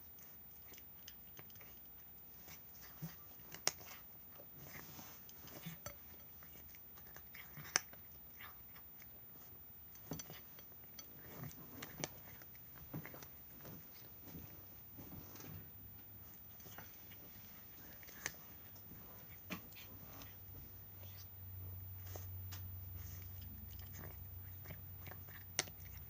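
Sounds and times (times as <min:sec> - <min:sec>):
cat chewing food: 0:00.0 - 0:26.0.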